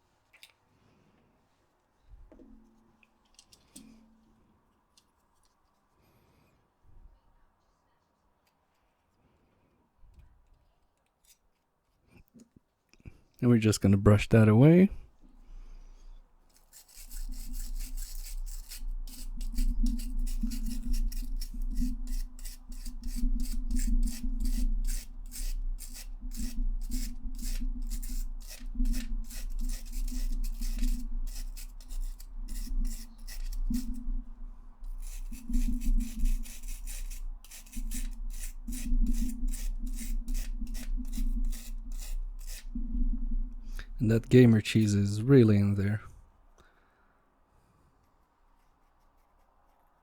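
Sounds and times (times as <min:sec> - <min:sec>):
brush scrubbing plastic: 0:16.5 - 0:43.0, 0:48.0 - 0:50.0.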